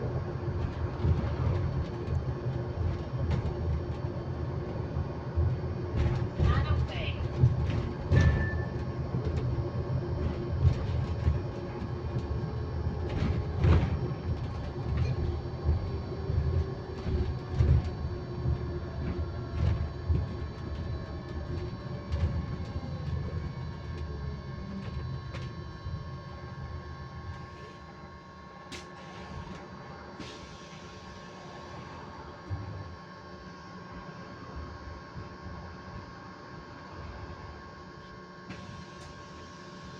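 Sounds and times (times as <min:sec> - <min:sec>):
ride rumble: 0:00.0 - 0:28.2
electric drive whine: 0:00.0 - 0:39.9
bus body knocks and rattles: 0:00.4 - 0:04.3, 0:05.4 - 0:24.0.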